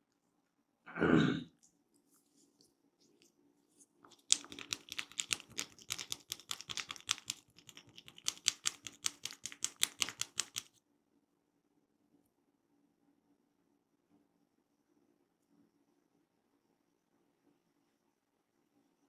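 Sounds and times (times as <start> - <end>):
hands tapping on head: 4.1 - 10.7.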